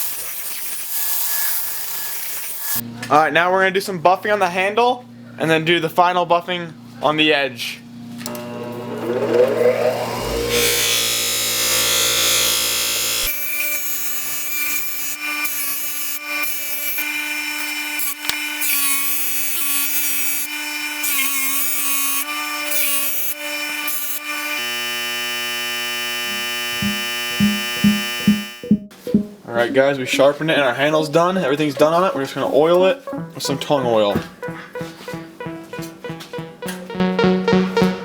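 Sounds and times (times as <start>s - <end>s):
buffing machine motor hum: 8.3s - 10.8s.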